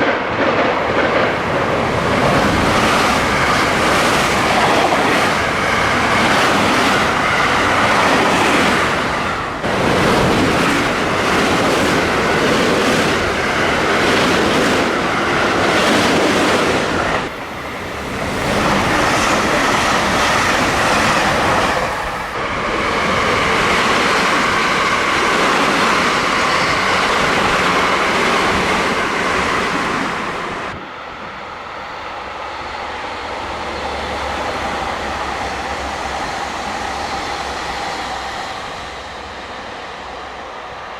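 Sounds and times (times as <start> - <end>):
wheels clacking on rails: 0.0 - 30.8
trains rushing past: 0.0 - 40.9.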